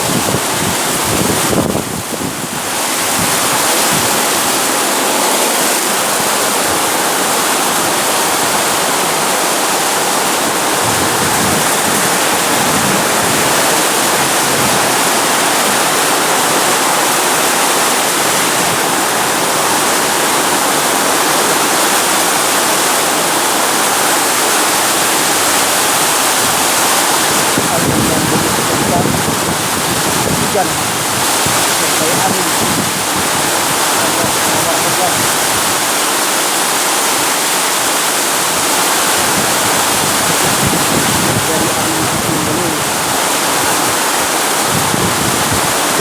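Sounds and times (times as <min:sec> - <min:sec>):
heavy rain pouring: 0:00.0 - 0:46.0.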